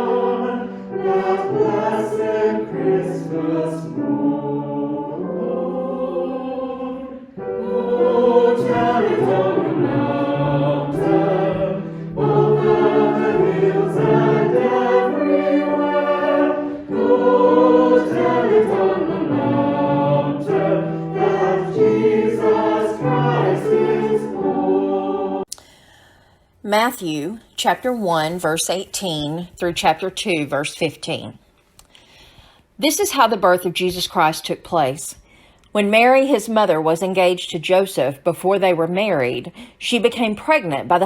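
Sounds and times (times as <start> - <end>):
choir singing: 0.0 - 25.5.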